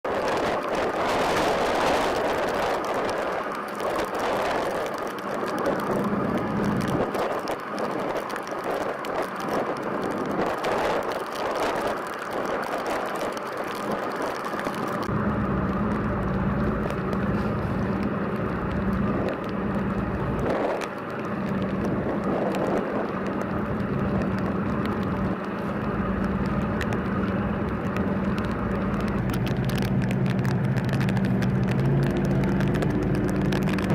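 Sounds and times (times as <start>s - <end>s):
broad noisy wash: 0.0s - 33.9s
low diesel engine hum: 0.0s - 33.9s.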